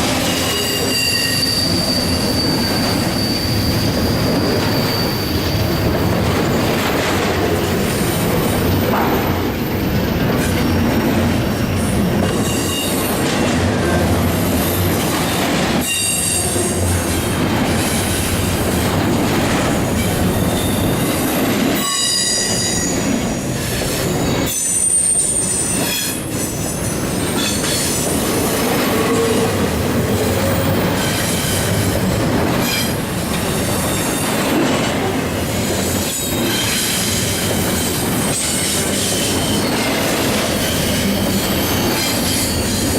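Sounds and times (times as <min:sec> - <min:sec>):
wheels clacking on rail joints: 0:00.0 - 0:21.9
freight train cars rumbling past: 0:00.0 - 0:42.9
wheel squeal: 0:00.4 - 0:05.8.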